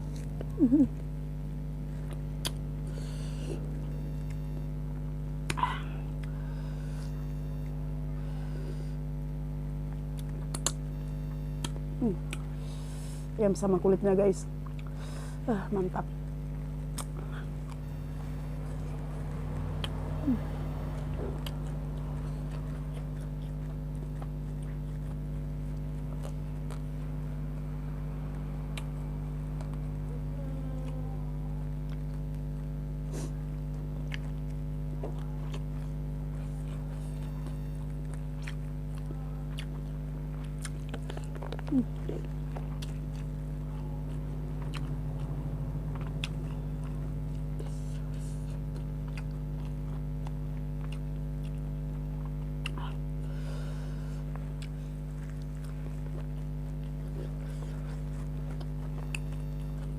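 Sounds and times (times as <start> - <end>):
chewing and biting food: 0.0 - 59.9
steady electrical hum: 0.0 - 59.9.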